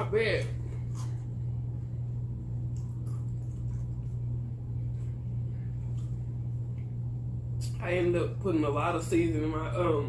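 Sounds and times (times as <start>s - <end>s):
steady low hum: 0.0s - 10.0s
chips being chewed: 2.6s - 4.3s.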